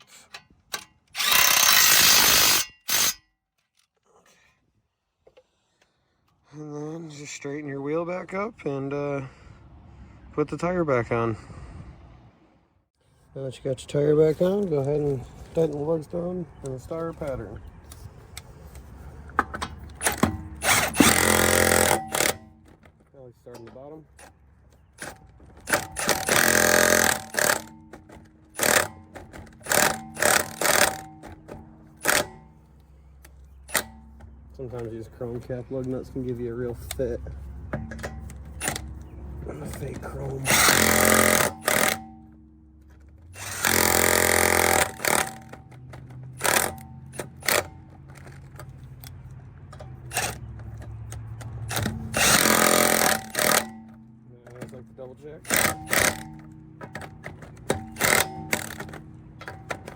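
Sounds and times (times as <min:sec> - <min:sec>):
impact wrench bursts: 0:00.0 - 0:03.2, 0:19.6 - 0:22.6, 0:25.0 - 0:32.6, 0:33.6 - 0:34.4, 0:37.8 - 0:48.6, 0:49.8 - 0:54.7, 0:55.4 - 0:59.9.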